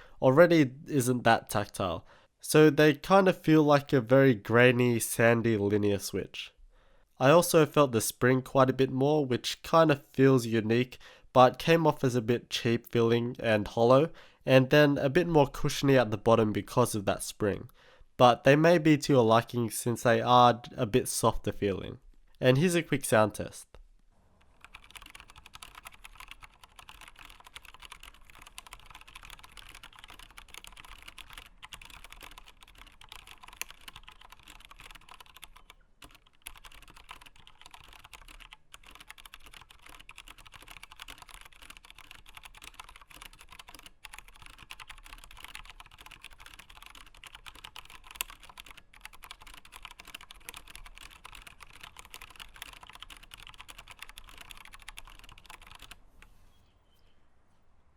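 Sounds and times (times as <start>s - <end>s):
mechanical keyboard typing: 24.4s - 56.0s.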